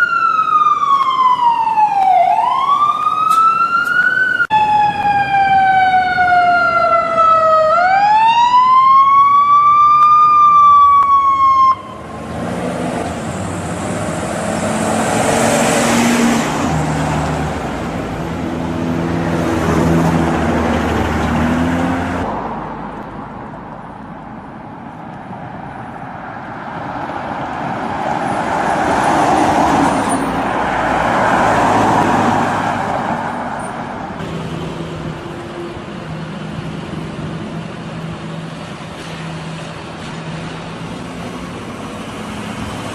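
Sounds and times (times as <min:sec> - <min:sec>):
ambulance siren wailing: 0:00.0 - 0:12.1
vehicles passing: 0:00.0 - 0:42.9
vehicle engines running: 0:11.9 - 0:26.1, 0:26.8 - 0:42.9.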